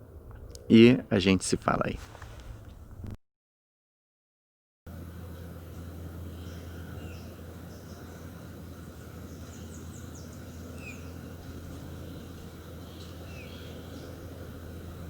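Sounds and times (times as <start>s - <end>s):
low outdoor hum: 0.0s - 3.2s, 4.9s - 15.0s
small birds chirping: 5.3s - 15.0s
downward-sliding bird calls: 6.3s - 14.8s.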